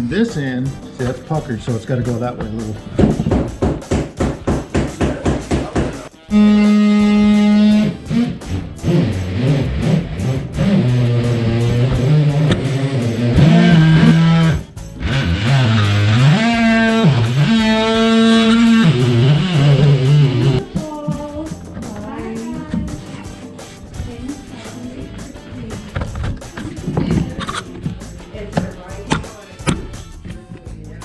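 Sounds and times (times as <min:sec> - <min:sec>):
electric guitar music: 0:06.2 - 0:30.6.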